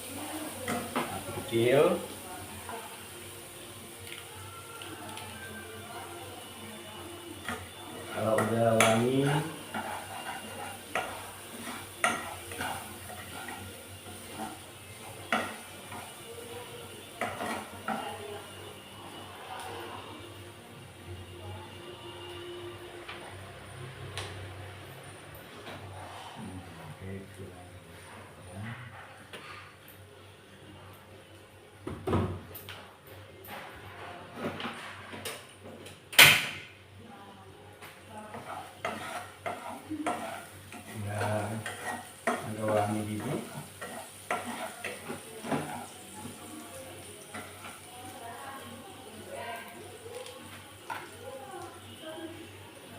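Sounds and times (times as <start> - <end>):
faint sizzle: 0.0 - 52.9
spatula scraping frying pan: 7.3 - 16.3, 16.9 - 20.1, 38.2 - 46.6, 47.2 - 47.9.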